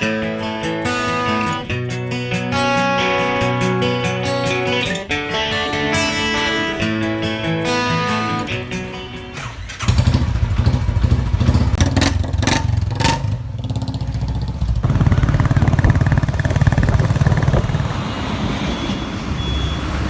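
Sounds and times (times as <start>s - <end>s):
acoustic guitar music: 0.0s - 9.8s
motorcycle engine running: 8.5s - 18.2s.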